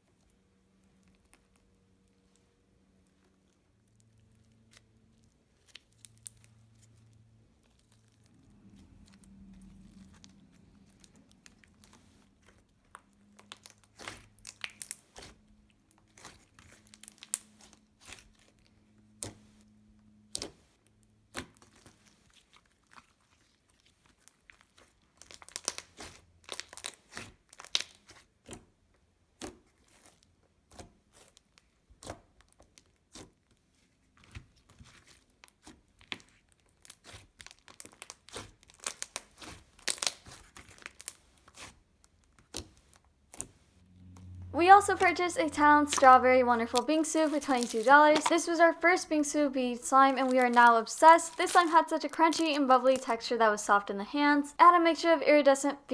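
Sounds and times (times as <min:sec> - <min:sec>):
slime squishing: 0:00.1 - 0:53.3.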